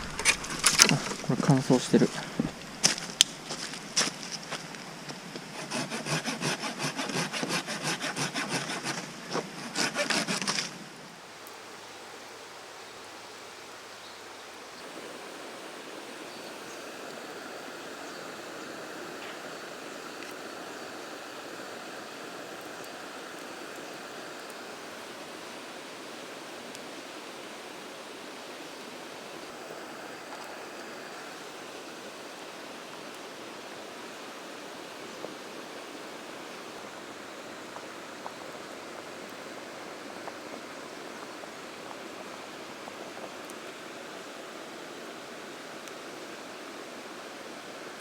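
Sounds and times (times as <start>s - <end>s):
sharp clicks: 0.0s - 3.4s
mountain stream rushing: 0.0s - 48.0s.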